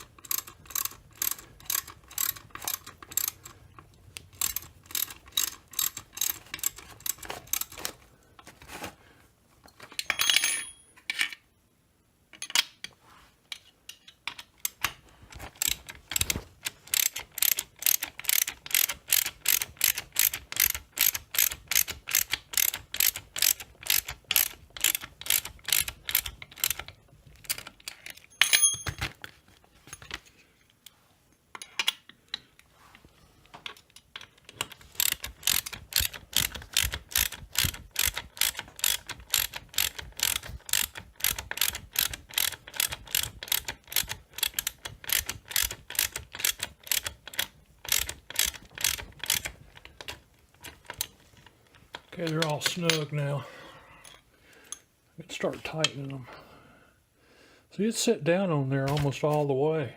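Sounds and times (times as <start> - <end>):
hand ratchet clicking: 0.0 - 7.9, 13.9 - 28.2, 33.7 - 53.1
metallic clinks: 9.9 - 11.0, 28.2 - 29.1.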